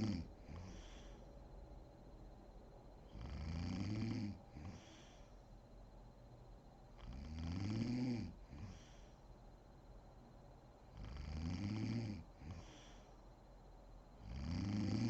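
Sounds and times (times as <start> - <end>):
woman snoring: 0.0 - 1.0, 3.1 - 5.0, 7.0 - 8.9, 11.0 - 13.0, 14.2 - 15.0.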